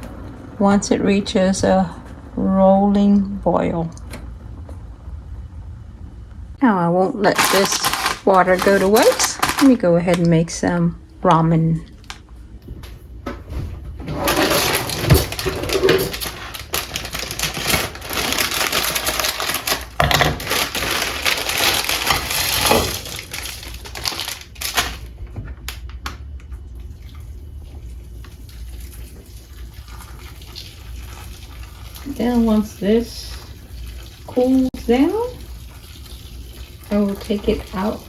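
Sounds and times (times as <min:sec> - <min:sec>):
packaging rustling: 0:07.3 - 0:10.2, 0:14.3 - 0:25.1
water pouring: 0:26.8 - 0:38.0.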